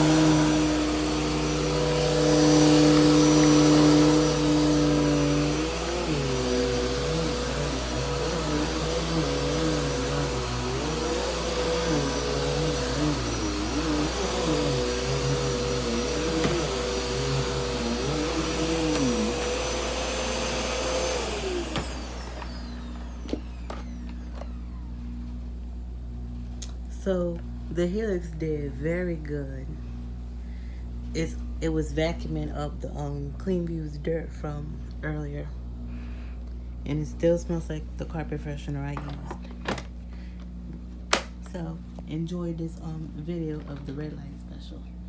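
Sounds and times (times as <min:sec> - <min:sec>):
vacuum cleaner running on carpet: 0:00.0 - 0:26.1
vacuum motor winding down: 0:00.0 - 0:28.0.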